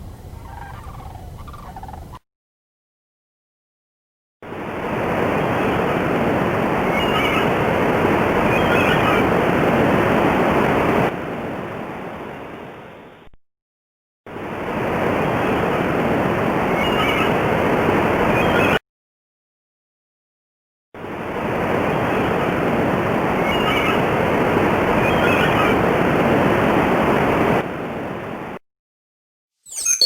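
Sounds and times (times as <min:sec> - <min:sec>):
faint high bird calls: 0:00.4 - 0:02.2, 0:06.9 - 0:07.5, 0:16.8 - 0:17.4, 0:29.7 - 0:30.0.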